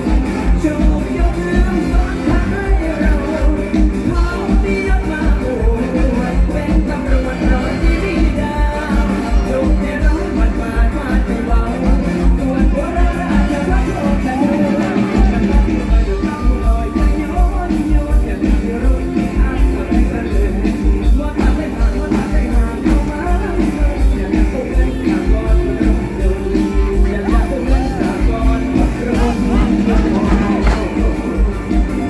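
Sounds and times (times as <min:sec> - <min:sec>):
amplified band: 0:00.0 - 0:32.0
person singing: 0:00.0 - 0:32.0
kick drum beat: 0:29.2 - 0:31.3.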